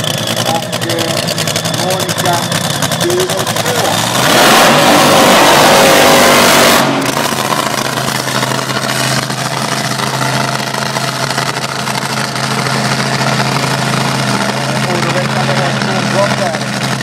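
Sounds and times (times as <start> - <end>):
dragster engine revving and idling: 0.0 - 17.0.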